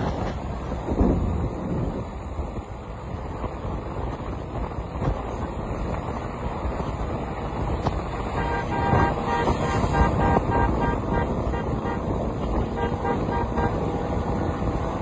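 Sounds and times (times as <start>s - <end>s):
motorbike engine rumble: 0.0s - 15.0s
wind buffeting microphone: 0.0s - 15.0s
vehicle horn: 8.2s - 14.5s.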